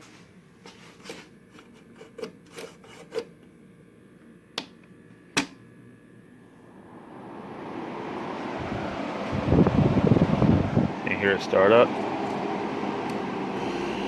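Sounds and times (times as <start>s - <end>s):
air conditioner starting up: 3.8s - 14.0s.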